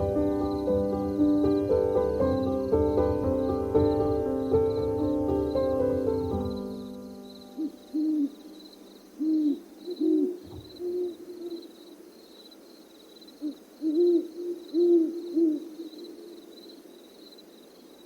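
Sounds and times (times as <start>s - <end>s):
owl hooting: 7.5s - 12.1s, 13.3s - 16.9s.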